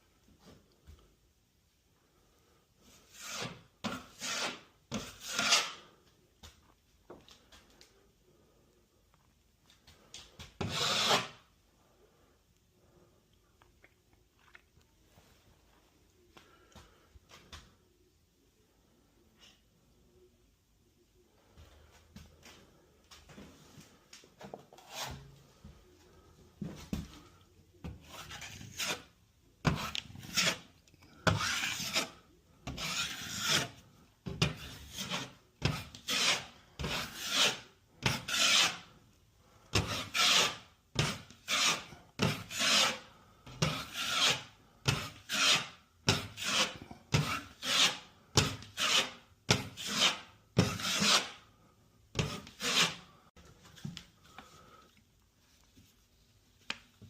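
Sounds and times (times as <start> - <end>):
taping knife scraping joint compound: 2.8 - 6.8, 9.8 - 11.5, 24.4 - 25.4, 27.8 - 39.0, 39.7 - 54.9.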